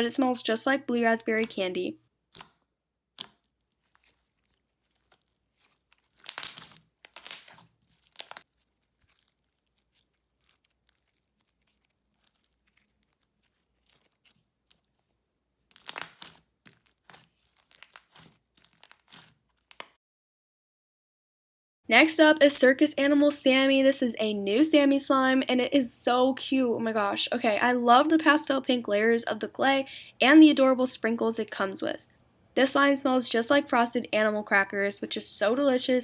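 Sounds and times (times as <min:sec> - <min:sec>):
slime squished by hand: 0:02.3 - 0:19.8.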